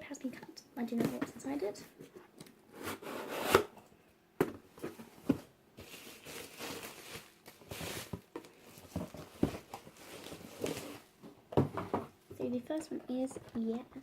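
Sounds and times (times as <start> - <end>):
cardboard rustling and tearing: 5.8 - 11.1.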